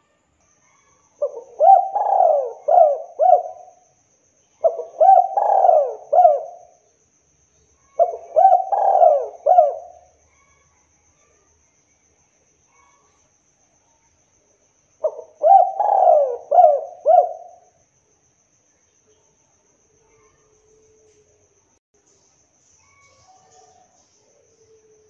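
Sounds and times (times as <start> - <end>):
dove cooing: 1.2 - 3.8, 4.6 - 6.7, 8.0 - 10.1, 15.0 - 17.6.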